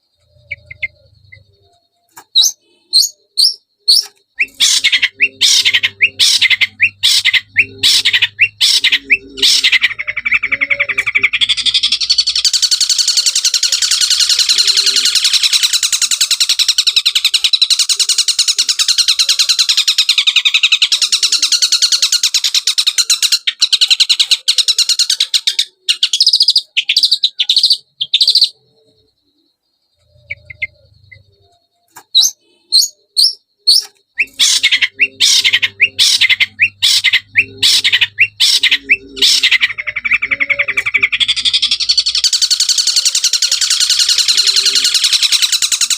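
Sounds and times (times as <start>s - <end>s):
shrike song: 27.8s - 43.6s.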